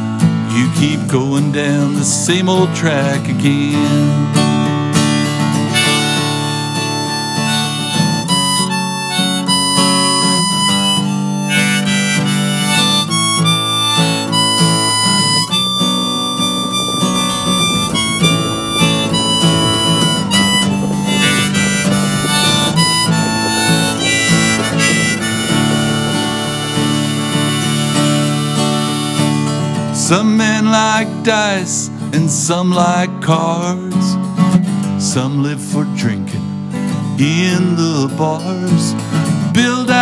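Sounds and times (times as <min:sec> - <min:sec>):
acoustic guitar: 0:00.0 - 0:40.0
harmonica melody: 0:05.2 - 0:31.0.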